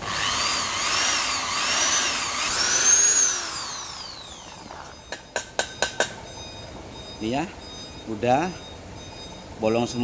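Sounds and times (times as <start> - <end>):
electric drill drilling metal: 0.0 - 4.9
drill motor winding down: 0.0 - 5.0.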